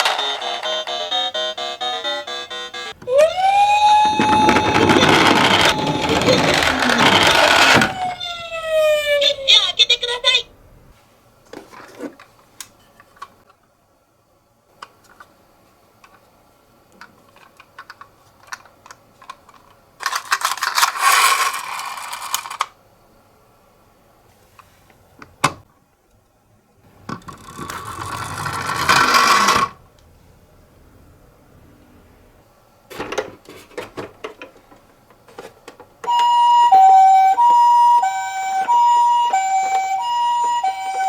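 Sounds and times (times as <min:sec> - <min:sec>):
toy car rolling and rattling: 0:00.0 - 0:10.4, 0:17.0 - 0:22.8, 0:27.0 - 0:29.8.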